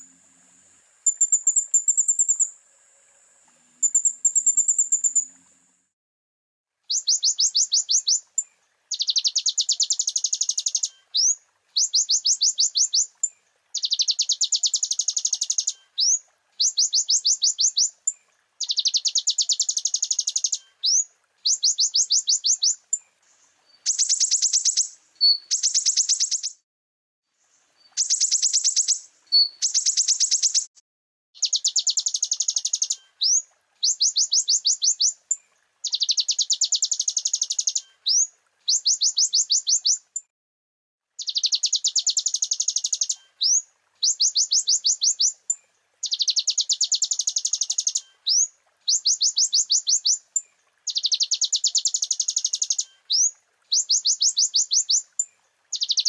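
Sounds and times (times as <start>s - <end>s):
bird singing high trills: 1.0s - 2.6s, 3.8s - 5.5s, 6.9s - 8.2s, 8.9s - 13.1s, 23.8s - 26.6s, 27.9s - 30.7s, 46.0s - 50.2s, 50.9s - 56.0s.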